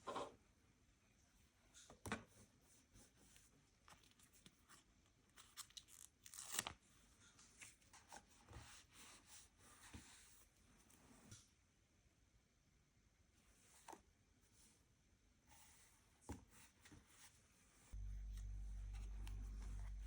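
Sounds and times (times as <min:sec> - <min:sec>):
paper tearing and crinkling: 0:05.4 - 0:06.8.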